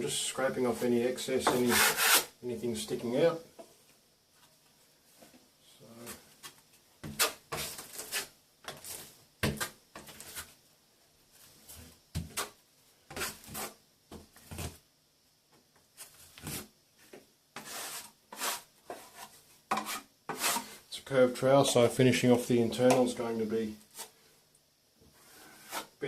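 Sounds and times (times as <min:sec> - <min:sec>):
plastering blade scraping plaster: 0:01.4 - 0:02.3, 0:07.1 - 0:09.1, 0:12.3 - 0:13.8, 0:17.6 - 0:20.8, 0:25.1 - 0:26.0.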